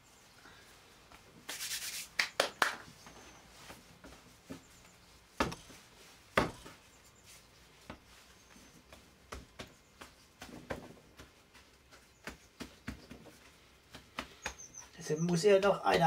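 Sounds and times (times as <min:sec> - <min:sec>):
dough rubbing: 0:01.4 - 0:02.4, 0:03.2 - 0:15.0
dough knocking: 0:05.3 - 0:06.8, 0:08.8 - 0:14.6.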